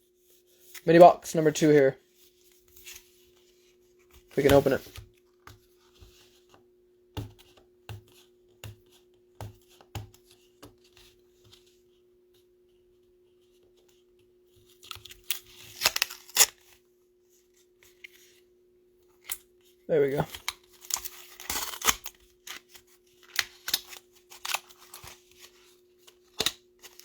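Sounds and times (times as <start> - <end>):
wrapper tearing and crinkling: 15.0 - 16.7, 20.4 - 25.5.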